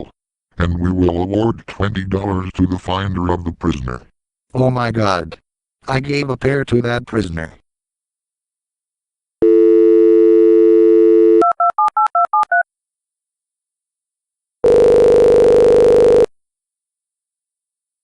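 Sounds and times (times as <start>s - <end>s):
telephone dial tone: 9.4s - 12.6s, 14.6s - 16.3s
telephone ringing tone: 9.4s - 12.6s, 14.6s - 16.3s.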